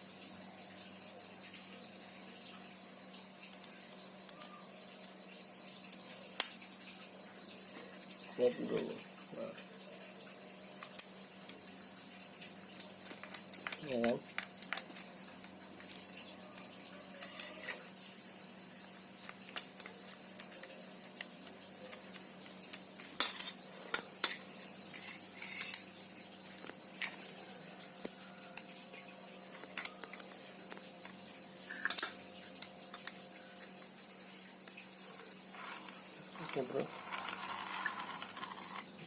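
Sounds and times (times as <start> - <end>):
small parts clicking and clinking: 10.7 - 18.0, 18.6 - 27.4, 29.5 - 39.0.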